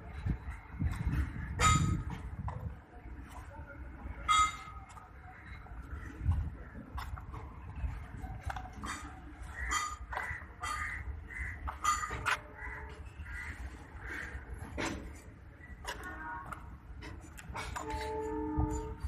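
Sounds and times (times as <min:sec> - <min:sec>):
birds calling: 0:08.8 - 0:16.2.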